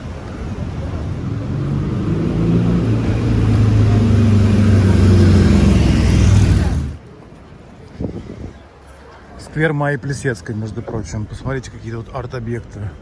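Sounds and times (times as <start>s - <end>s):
vehicle engine running: 0.0s - 7.0s.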